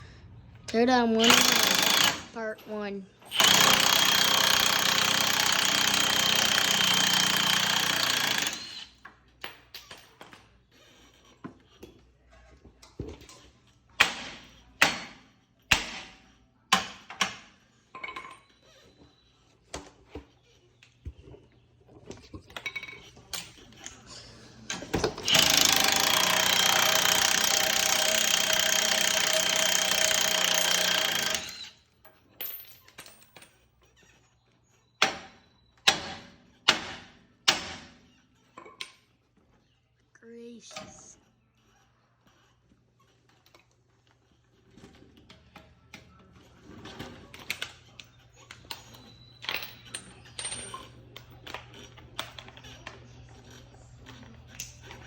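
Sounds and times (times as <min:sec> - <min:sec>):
tools clanking and knocking: 0:00.7 - 0:10.6, 0:11.3 - 0:20.3, 0:21.0 - 0:24.0, 0:35.0 - 0:39.5, 0:44.6 - 0:55.0
impact wrench hammering: 0:14.0 - 0:17.4, 0:25.2 - 0:31.6.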